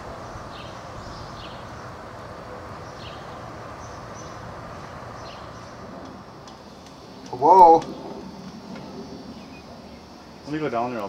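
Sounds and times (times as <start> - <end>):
outdoor background noise: 0.0 - 11.0
faint bird chirps: 7.3 - 10.6.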